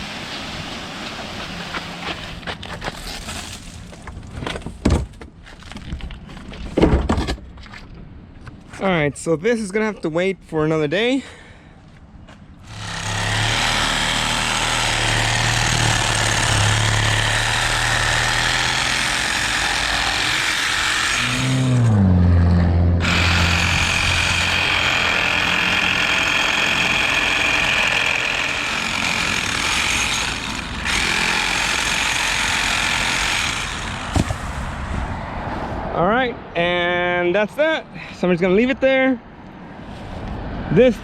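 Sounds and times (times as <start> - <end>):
power saw cutting branches: 12.6 - 22.4, 23.0 - 34.6.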